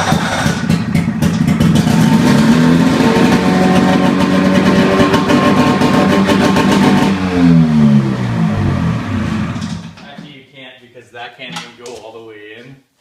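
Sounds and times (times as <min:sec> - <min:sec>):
two-stroke snowmobile engine running: 0:00.0 - 0:09.8.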